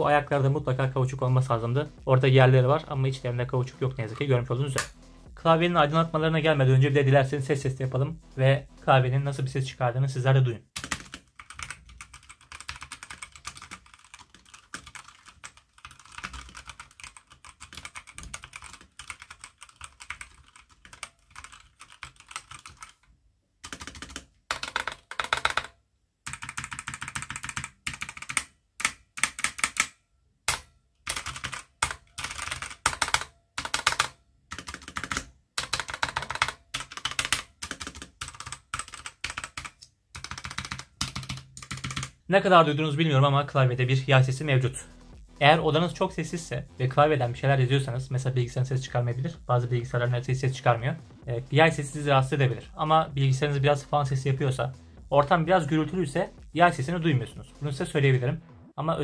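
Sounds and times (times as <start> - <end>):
mechanical keyboard typing: 10.8 - 42.2.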